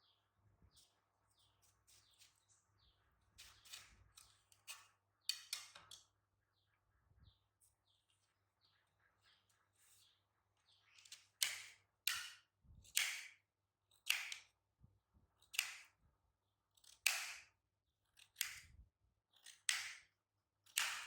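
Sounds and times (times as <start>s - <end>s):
rustles and scrapes: 0.7s - 2.7s, 3.3s - 4.9s.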